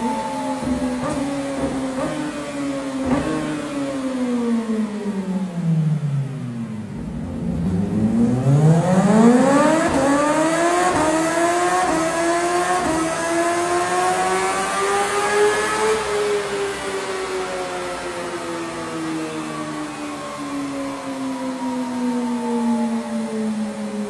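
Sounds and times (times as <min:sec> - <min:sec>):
motorcycle engine revving: 0:00.0 - 0:17.3.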